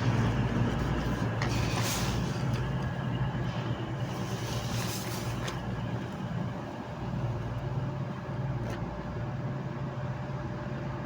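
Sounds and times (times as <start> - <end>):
train rumbling: 0.0 - 8.6
electric train hum: 0.0 - 11.0.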